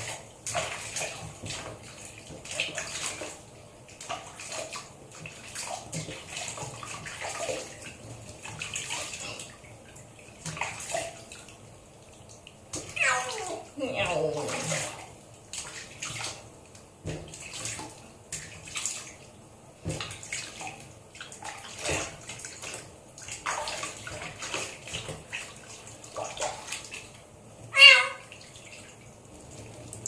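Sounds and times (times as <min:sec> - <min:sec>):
water splashing and sloshing: 0:00.0 - 0:30.0
kitten meowing: 0:13.0 - 0:13.5, 0:27.8 - 0:28.2.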